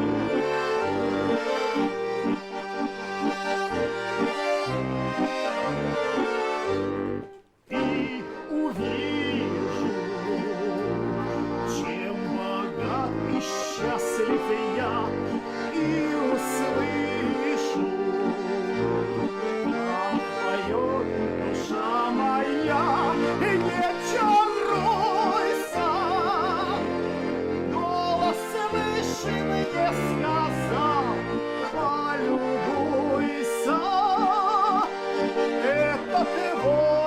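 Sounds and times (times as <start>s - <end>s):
held chords: 0.0s - 37.0s.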